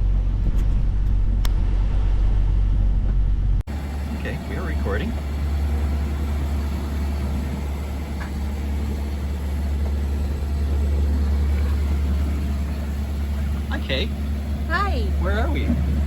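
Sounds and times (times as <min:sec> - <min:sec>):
boat diesel engine droning: 0:00.0 - 0:16.0.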